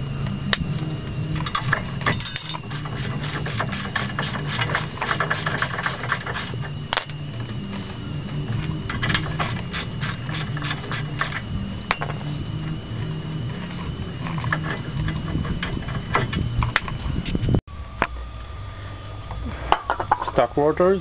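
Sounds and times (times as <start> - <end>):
low hum: 0.0 - 21.0
ratchet wrench clicking: 1.4 - 7.2, 8.9 - 11.4.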